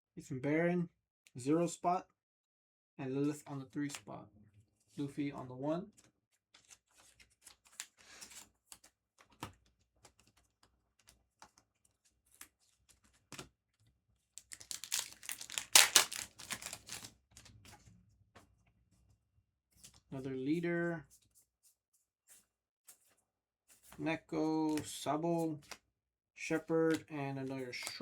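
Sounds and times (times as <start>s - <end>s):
cards clicking and tapping: 14.4s - 17.1s, 24.7s - 24.9s
foil wrapper tearing and crinkling: 14.4s - 17.4s.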